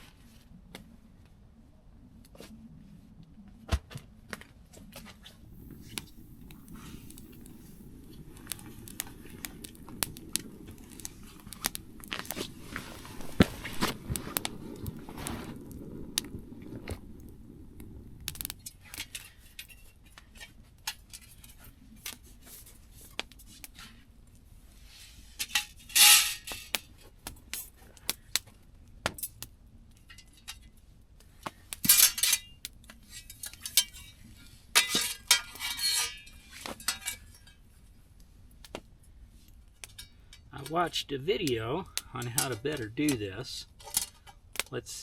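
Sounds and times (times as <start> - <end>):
rustling bursts: 5.1 - 18.6.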